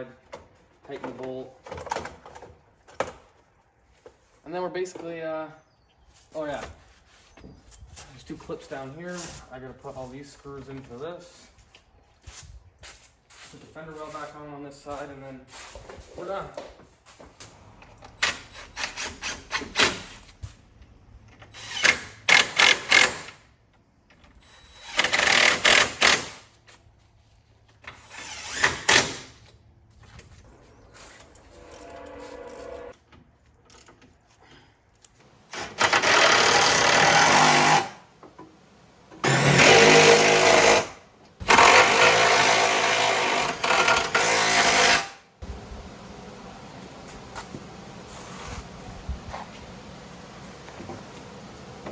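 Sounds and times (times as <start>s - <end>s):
power driver running screws: 21.5s - 23.4s, 24.4s - 26.4s, 35.5s - 38.0s, 39.2s - 45.1s.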